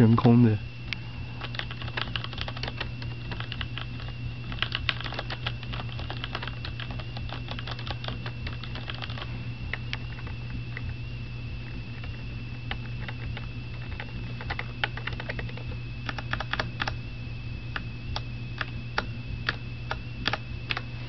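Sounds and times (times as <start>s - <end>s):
fast typing on mechanical keyboard: 1.4s - 9.3s, 12.0s - 17.0s, 18.6s - 20.8s.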